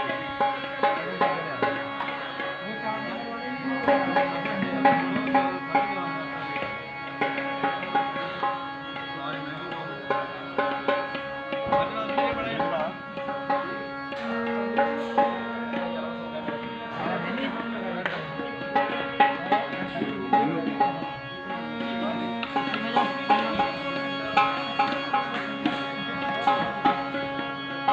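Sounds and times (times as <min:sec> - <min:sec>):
band playing: 0:03.0 - 0:07.3, 0:11.7 - 0:18.4
hand drum strokes: 0:03.7 - 0:05.9.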